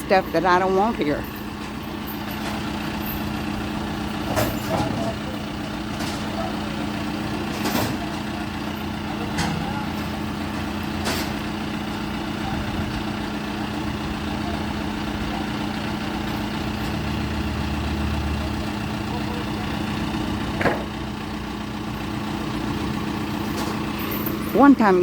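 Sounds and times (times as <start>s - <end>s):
engine idling: 0.0s - 25.0s.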